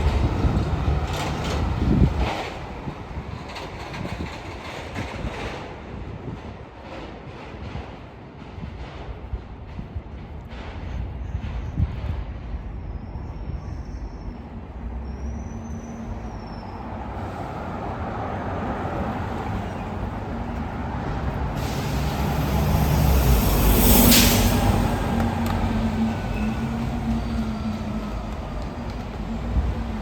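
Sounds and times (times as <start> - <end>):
street traffic: 0.0 - 4.3, 11.8 - 30.0
heavy vehicle engine: 18.9 - 29.7
air brakes hissing: 21.4 - 27.4.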